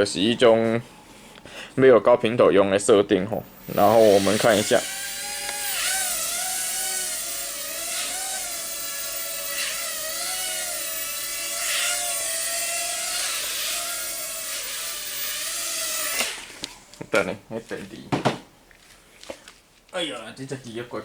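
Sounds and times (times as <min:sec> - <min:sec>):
helicopter rotor motors whining: 0:03.4 - 0:16.5.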